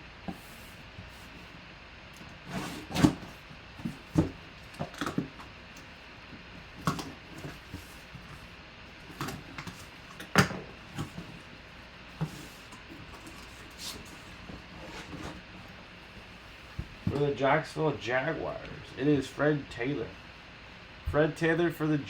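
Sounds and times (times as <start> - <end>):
cardboard scraping and rustling: 0.3 - 1.5, 2.2 - 5.6, 6.6 - 17.2.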